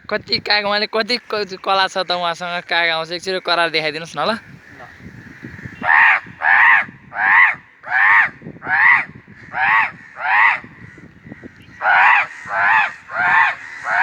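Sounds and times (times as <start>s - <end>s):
man imitating crow caws: 4.0s - 14.0s.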